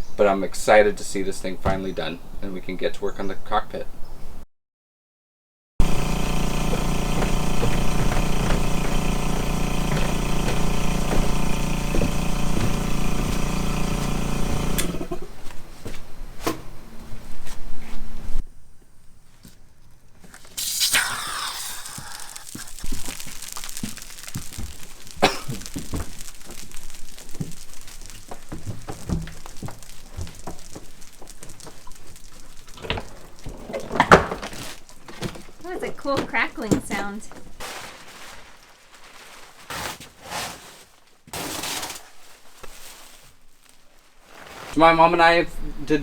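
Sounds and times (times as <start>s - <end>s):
sheet ripping from epoxy: 20.4s - 35.6s
plastic film crackling and crinkling: 20.4s - 44.9s.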